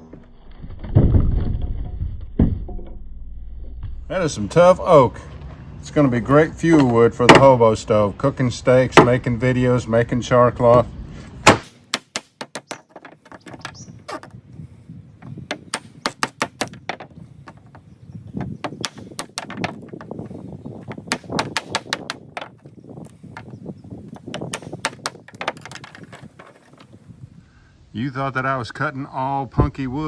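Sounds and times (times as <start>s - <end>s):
wood splitting knocks on metal: 6.8s - 7.6s, 9.0s - 9.2s, 11.4s - 13.8s, 15.2s - 17.8s, 18.4s - 22.6s, 24.2s - 26.8s.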